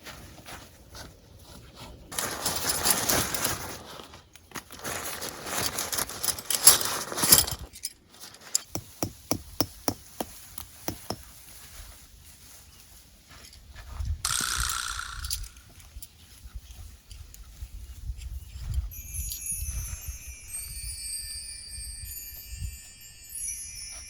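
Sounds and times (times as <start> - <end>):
tent rustling: 0.0 - 8.8.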